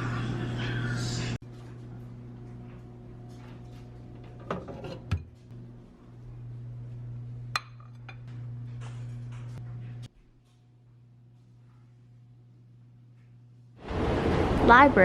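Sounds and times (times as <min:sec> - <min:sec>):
steady low hum: 0:00.0 - 0:15.0
tableware clinking: 0:07.6 - 0:09.6.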